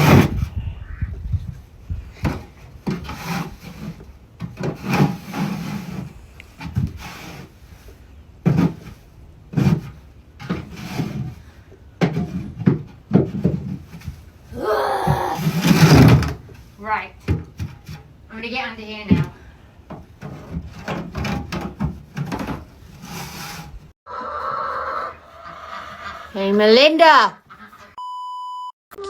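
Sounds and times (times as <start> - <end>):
hand tool scraping floor: 2.2 - 7.9, 8.5 - 11.5, 20.2 - 23.8.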